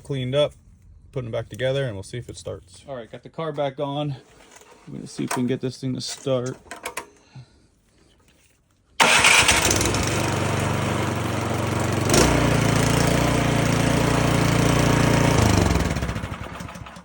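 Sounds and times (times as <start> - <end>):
snowblower engine running: 9.0 - 17.0.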